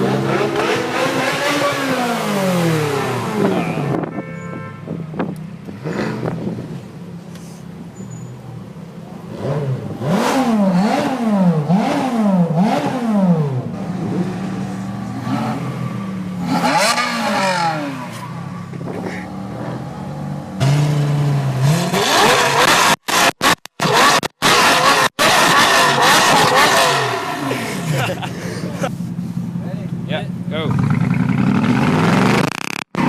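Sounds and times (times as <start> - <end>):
car accelerating: 0.0 - 4.0, 9.2 - 29.0
sports car engine revving: 0.0 - 4.0, 5.2 - 6.8, 9.2 - 33.0.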